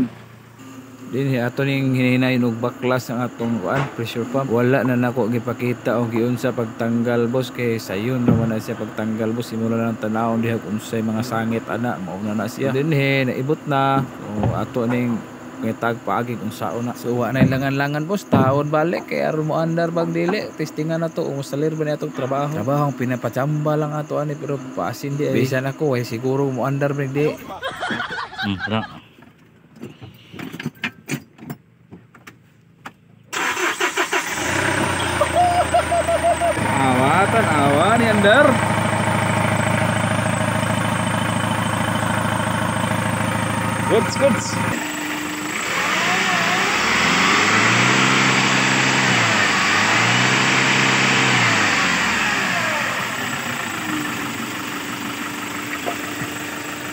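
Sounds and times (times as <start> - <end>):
diesel engine idling: 0.0 - 29.0, 33.3 - 56.9
starter cranking diesel engine: 33.3 - 56.9.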